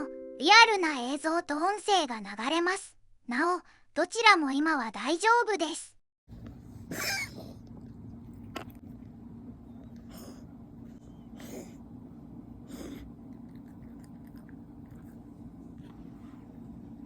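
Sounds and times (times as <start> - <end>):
cat sneezing: 6.8 - 7.6, 11.4 - 11.8, 12.6 - 13.2.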